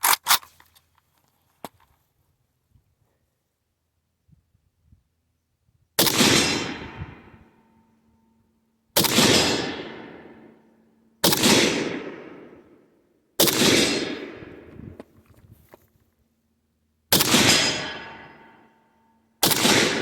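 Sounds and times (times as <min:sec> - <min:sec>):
rifle shots echoing: 0:06.0 - 0:07.3, 0:09.0 - 0:10.6, 0:11.2 - 0:12.8, 0:13.4 - 0:14.7, 0:17.1 - 0:18.7, 0:19.4 - 0:20.0.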